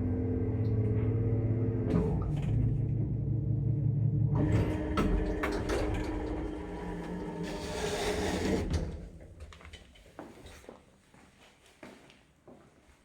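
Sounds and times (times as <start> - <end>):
lift motor humming: 0.0 - 8.8
lift doors clattering and sliding: 4.2 - 9.9.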